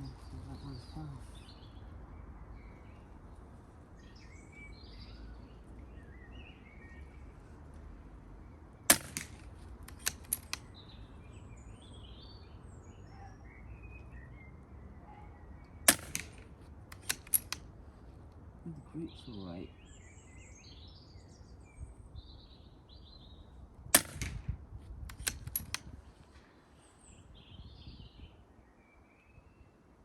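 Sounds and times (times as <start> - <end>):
birds chirping: 0.0 - 24.4, 25.1 - 30.0
silenced air rifle shots: 8.8 - 11.0, 15.8 - 17.8, 23.8 - 26.4
low wind rumble: 21.2 - 28.7
light clicks: 25.1 - 26.0.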